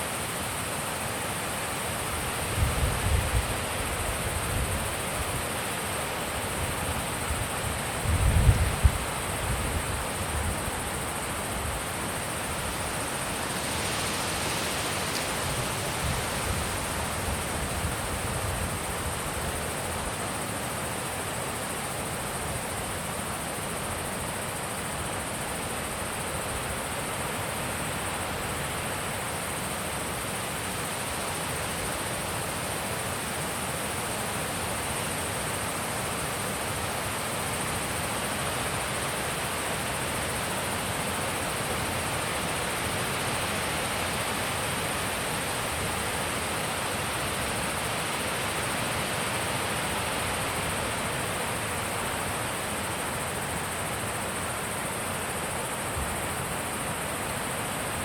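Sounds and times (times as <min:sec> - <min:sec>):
wind rumble on microphone: 0:02.5 - 0:04.9, 0:08.0 - 0:10.7.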